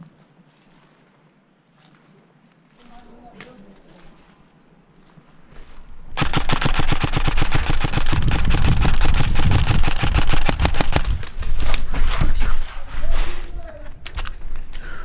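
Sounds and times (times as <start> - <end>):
airsoft gun rapid shots: 6.2 - 11.1.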